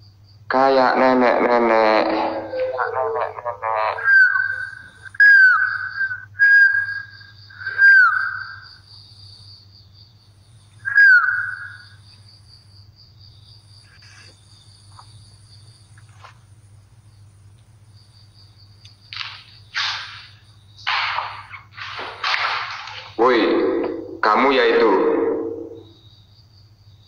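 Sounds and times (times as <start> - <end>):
high insect trill: 0.0 - 27.0
low electrical hum: 0.0 - 27.0
whistled notes sliding down: 4.0 - 8.6.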